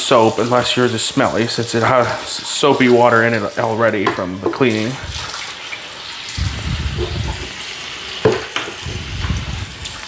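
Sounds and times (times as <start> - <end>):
water sloshing in plastic tank: 4.0 - 10.0
knock: 8.2 - 8.8.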